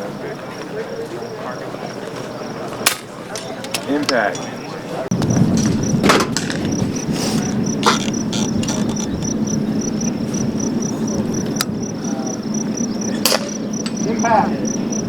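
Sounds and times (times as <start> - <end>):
cricket chirping: 0.0 - 15.0
steady low rumble: 5.1 - 15.0.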